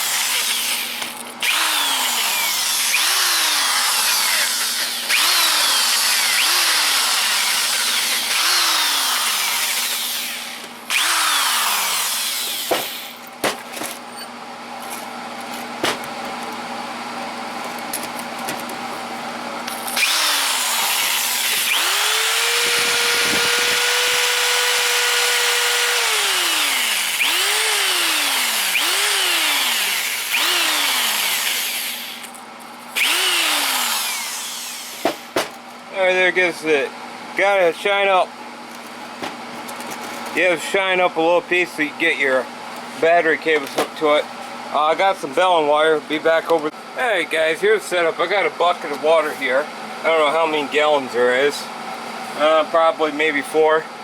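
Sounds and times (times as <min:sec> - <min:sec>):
power drill wire brush scrubbing metal: 0:00.0 - 0:13.2, 0:19.9 - 0:32.3, 0:33.0 - 0:35.0.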